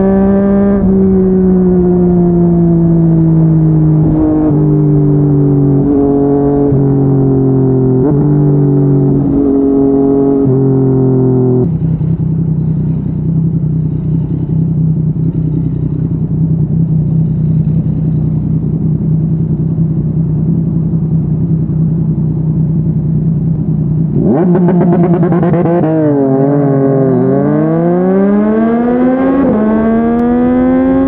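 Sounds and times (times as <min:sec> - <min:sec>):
motorcycle engine revving: 0:00.0 - 0:31.0
motorcycle engine running: 0:00.0 - 0:31.0.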